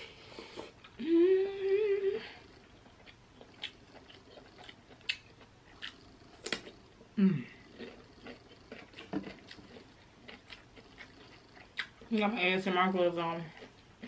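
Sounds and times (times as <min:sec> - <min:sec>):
person humming mmm: 0:00.4 - 0:02.5, 0:07.2 - 0:07.7.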